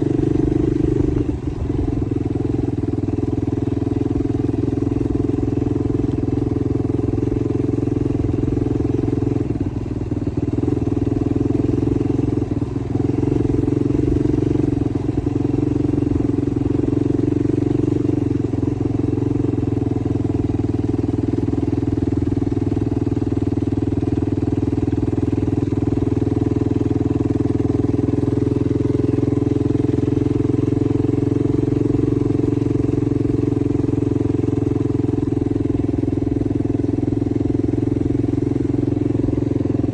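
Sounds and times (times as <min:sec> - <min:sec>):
quad engine running: 0:00.0 - 0:39.9.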